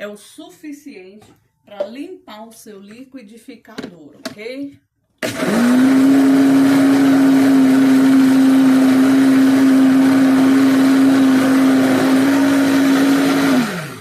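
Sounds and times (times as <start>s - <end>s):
blender running: 5.2s - 14.0s.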